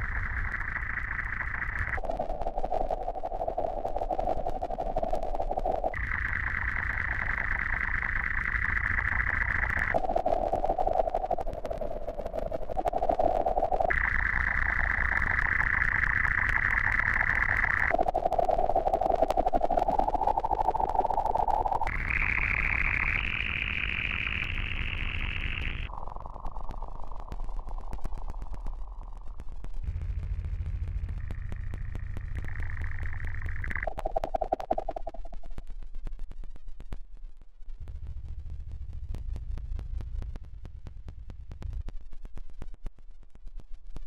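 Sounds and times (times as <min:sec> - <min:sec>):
low hum: 0:00.0 - 0:44.0
pitch-jumping static hiss: 0:00.0 - 0:44.0
fine crackling clicks: 0:25.7 - 0:29.9.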